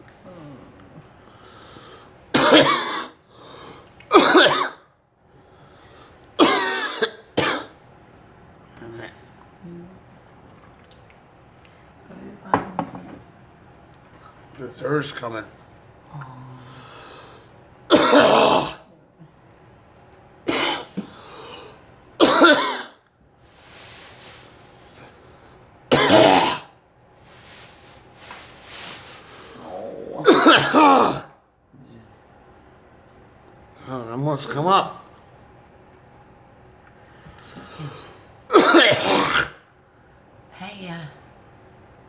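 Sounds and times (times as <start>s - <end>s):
person coughing harshly: 2.4s - 3.2s, 4.1s - 4.8s, 6.4s - 7.8s, 17.9s - 18.8s, 20.5s - 21.2s, 22.2s - 23.0s, 25.9s - 26.8s, 29.6s - 31.3s, 38.0s - 39.6s.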